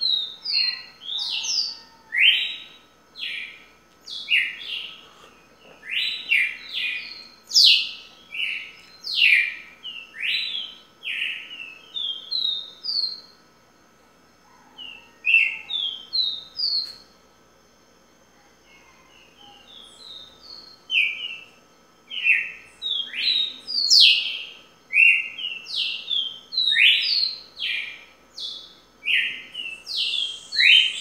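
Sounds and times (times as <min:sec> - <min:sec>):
songbird whistling: 0:19.4 - 0:31.0.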